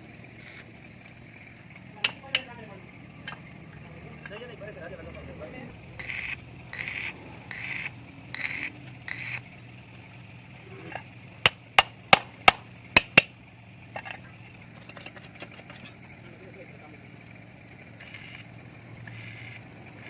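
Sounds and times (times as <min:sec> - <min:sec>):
rasping strokes: 0:05.9 - 0:09.6, 0:18.0 - 0:20.0
hammer striking metal: 0:11.4 - 0:13.3.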